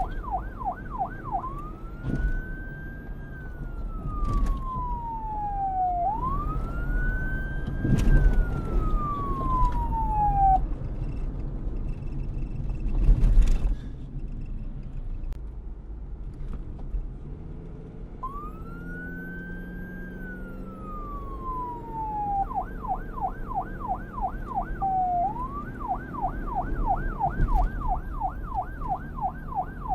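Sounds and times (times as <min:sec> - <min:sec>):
police siren wailing and yelping: 0:00.0 - 0:10.7, 0:18.2 - 0:29.9
low traffic rumble: 0:00.0 - 0:29.9.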